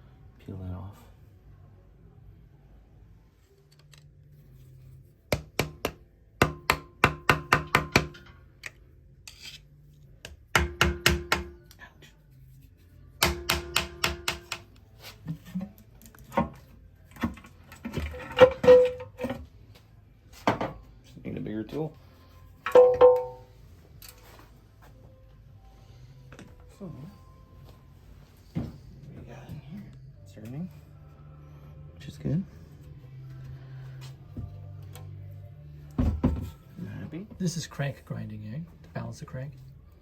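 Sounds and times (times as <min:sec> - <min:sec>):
hammer striking metal: 0:05.3 - 0:08.4, 0:10.5 - 0:11.6, 0:13.2 - 0:14.7, 0:22.6 - 0:23.5
knocks and clanks: 0:22.6 - 0:23.4.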